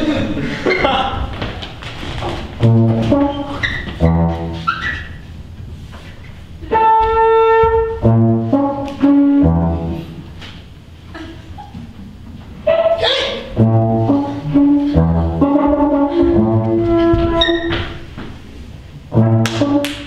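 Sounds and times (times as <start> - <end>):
brass instrument notes: 2.6 - 5.3, 6.6 - 10.4, 12.7 - 18.0, 19.1 - 20.0.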